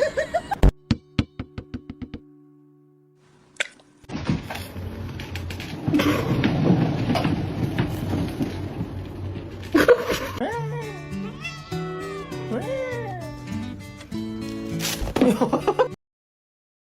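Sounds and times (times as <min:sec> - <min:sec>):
muffled rumbling and rustling: 0:04.1 - 0:10.4
cat meowing: 0:10.6 - 0:13.4.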